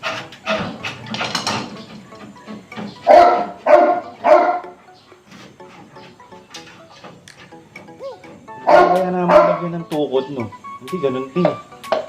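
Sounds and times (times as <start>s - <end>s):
dog barking: 3.1s - 4.8s, 8.6s - 9.6s.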